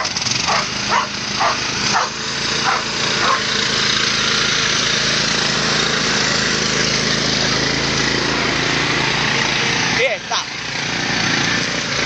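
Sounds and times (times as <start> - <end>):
dog barking: 0.0 - 3.5
lawn tractor engines running: 0.0 - 12.0.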